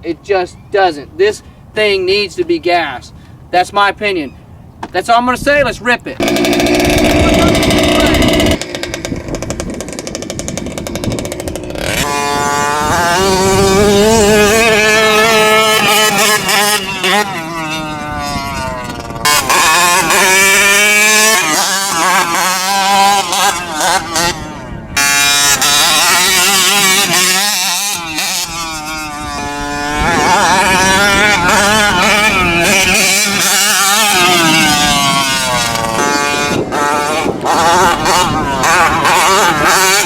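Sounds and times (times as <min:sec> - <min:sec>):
rc truck engine revving: 0:06.2 - 0:40.0.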